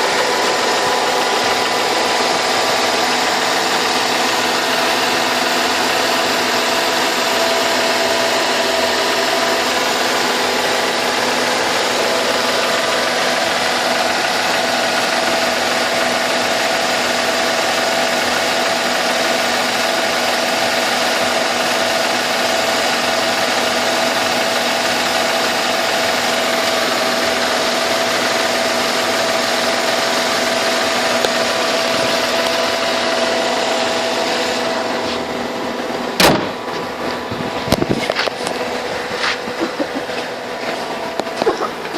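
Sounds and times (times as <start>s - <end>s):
car engine idling with a knock: 36.0s - 41.9s.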